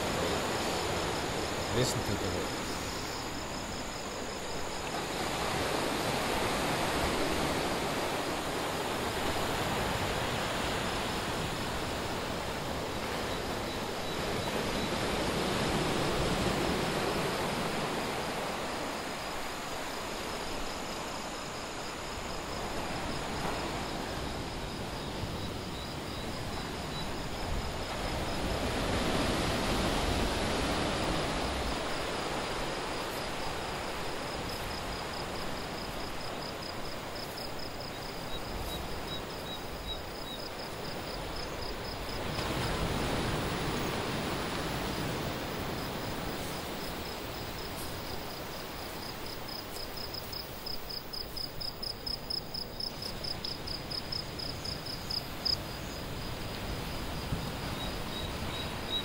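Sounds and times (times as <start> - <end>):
night insects trilling: 0.0 - 59.0
surf waves breaking: 27.4 - 39.1, 40.7 - 50.7.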